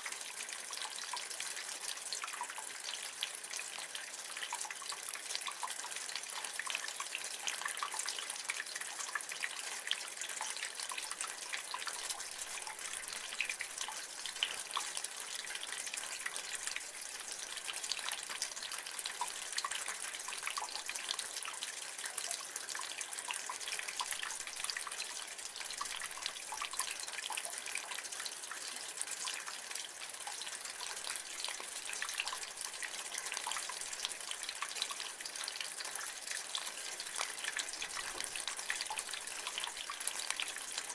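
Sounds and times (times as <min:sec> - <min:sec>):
water drips: 0:00.0 - 0:40.9
rainwater splashing off gutter: 0:09.9 - 0:40.9.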